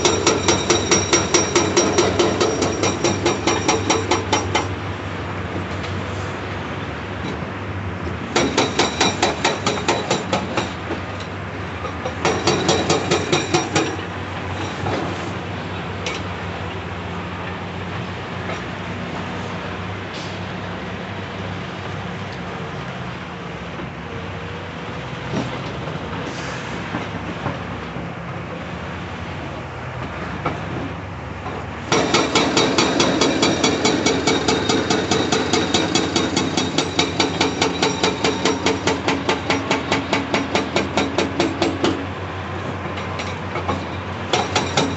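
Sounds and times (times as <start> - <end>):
hydraulic breaker hammering rock: 0.0 - 4.7, 8.3 - 11.0, 11.8 - 14.9, 31.9 - 42.1, 43.5 - 44.9
excavator diesel engine running: 0.0 - 44.9.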